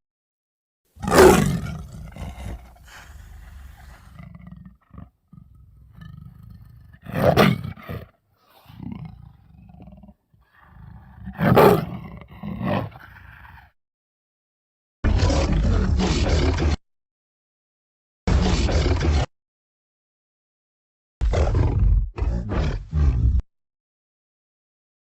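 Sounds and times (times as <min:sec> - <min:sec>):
loud roars: 0:01.0 - 0:04.3.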